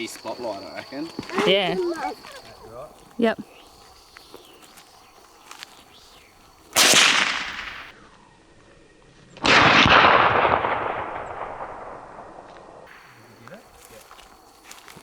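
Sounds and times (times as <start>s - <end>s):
rifle shots echoing: 6.8s - 7.9s, 9.4s - 13.1s.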